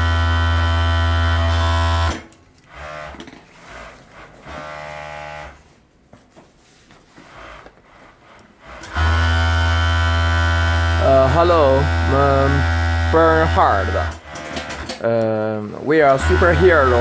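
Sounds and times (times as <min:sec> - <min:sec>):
loud electrical hum: 0:00.0 - 0:03.3, 0:08.8 - 0:17.0
small electric motor running: 0:00.0 - 0:05.6, 0:08.8 - 0:14.9, 0:15.8 - 0:17.0.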